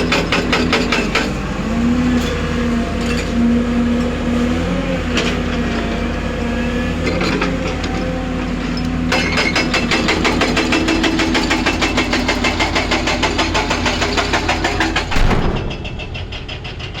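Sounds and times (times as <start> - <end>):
excavator diesel engine clattering: 0.0 - 6.3, 6.9 - 17.0
loud knock: 15.0 - 17.0.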